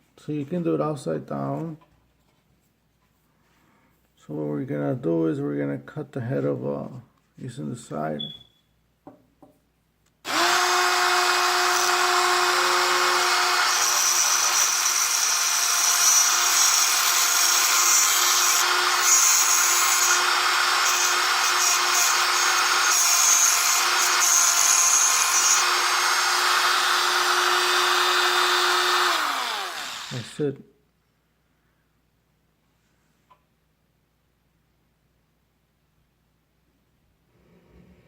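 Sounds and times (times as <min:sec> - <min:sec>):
diamond wheel cutting metal: 0:10.3 - 0:30.4
grinder motor running: 0:10.3 - 0:30.4.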